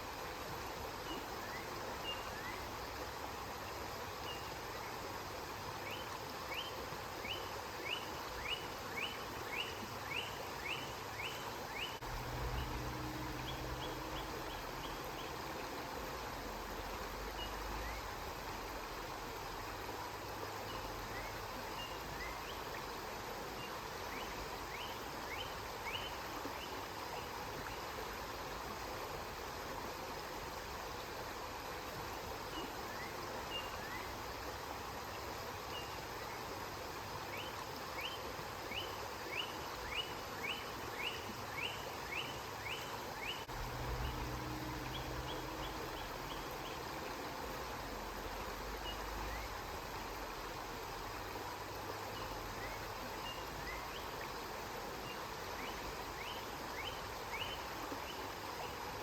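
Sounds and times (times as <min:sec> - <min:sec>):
flowing river water: 0:00.0 - 0:59.0
low rumble: 0:12.0 - 0:14.8, 0:43.5 - 0:46.5
bird chirping: 0:39.9 - 0:46.9.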